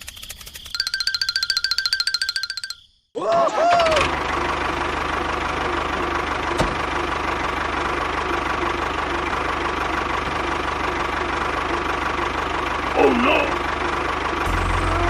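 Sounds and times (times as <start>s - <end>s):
small engine idling: 3.8s - 15.0s.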